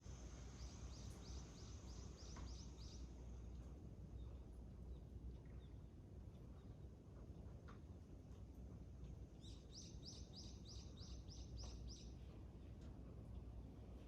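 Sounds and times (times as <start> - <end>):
low outdoor rumble: 0.0 - 14.0
sparrows chirping: 0.4 - 3.1, 9.4 - 12.2.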